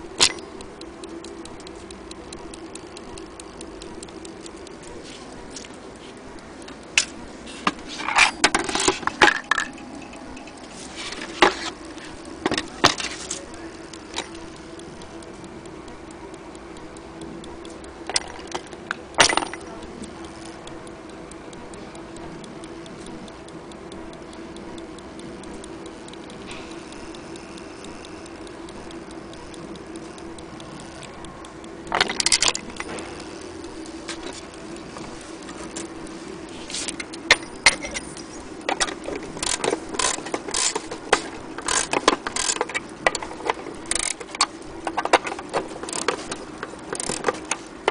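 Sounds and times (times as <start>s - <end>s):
sharp clicks and knocks: 0.0s - 21.8s, 22.4s - 47.9s
mantle clock ticking: 0.0s - 47.9s.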